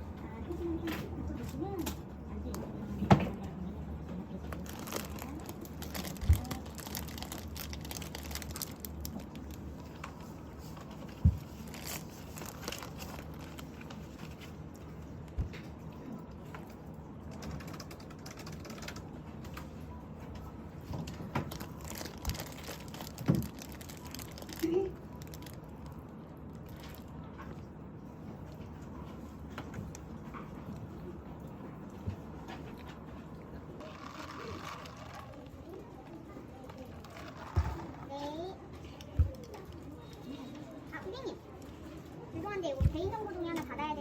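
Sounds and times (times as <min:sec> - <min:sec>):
plastic packaging crinkling: 0:04.5 - 0:15.6, 0:17.3 - 0:19.1, 0:20.9 - 0:27.1, 0:33.8 - 0:38.4.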